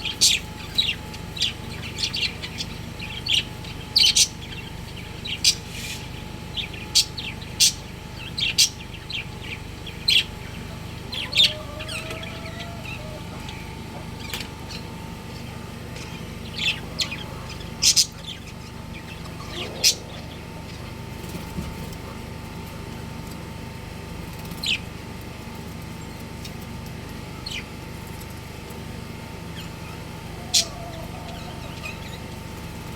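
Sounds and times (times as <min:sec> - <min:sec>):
budgerigars chirping: 0:00.0 - 0:21.4, 0:29.5 - 0:32.6
steady low hum: 0:00.0 - 0:32.9.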